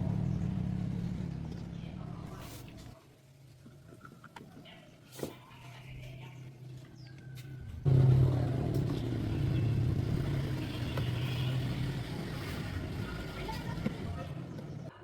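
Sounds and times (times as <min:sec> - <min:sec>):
small car engine running: 0:07.0 - 0:14.9.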